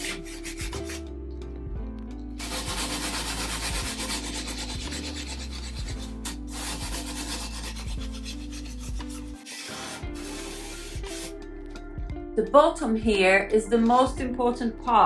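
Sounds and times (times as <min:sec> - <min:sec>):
wet sandpaper rubbing on glass: 0:00.0 - 0:01.0, 0:02.4 - 0:11.3.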